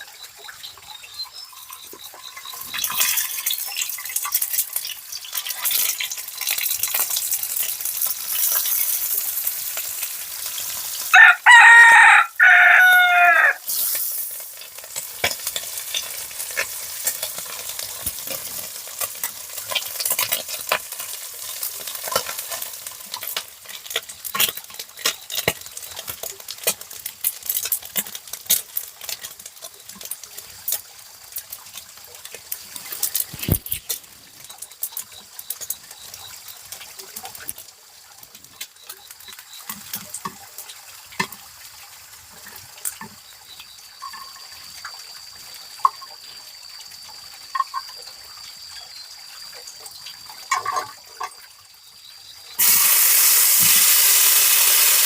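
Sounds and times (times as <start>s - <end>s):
food sizzling in a pan: 0.0s - 55.0s
rooster crowing: 11.1s - 13.6s.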